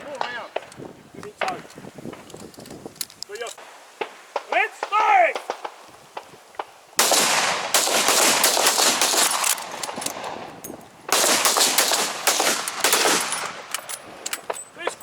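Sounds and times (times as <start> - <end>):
rifle shots: 7.0 - 10.4, 11.1 - 14.2.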